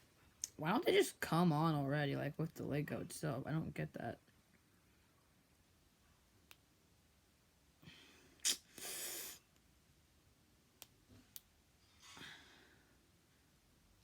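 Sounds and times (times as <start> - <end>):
person breathing out: 7.8 - 9.4.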